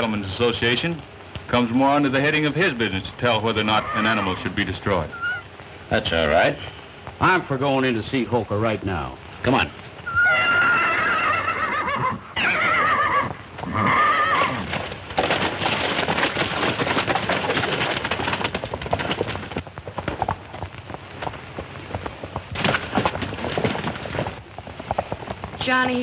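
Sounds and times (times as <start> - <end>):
horse whinnying: 3.6 - 5.5, 10.0 - 15.0
fast hoofbeats: 9.5 - 26.0.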